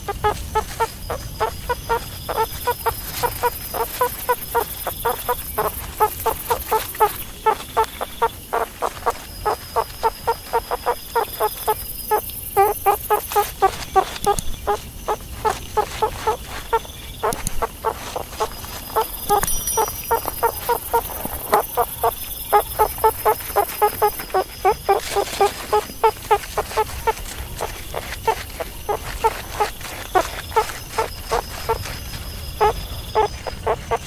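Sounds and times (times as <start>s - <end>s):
meerkats clucking chirps: 0.0s - 34.0s.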